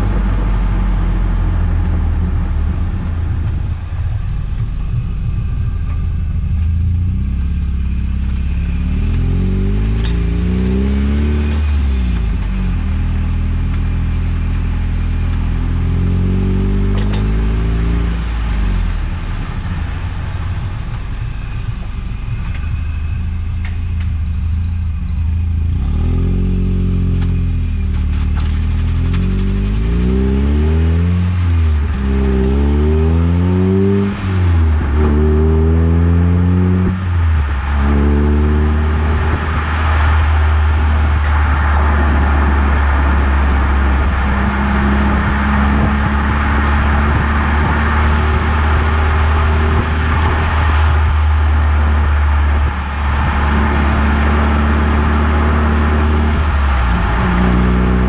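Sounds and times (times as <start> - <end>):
car engine revving through gears: 0.0 - 58.0.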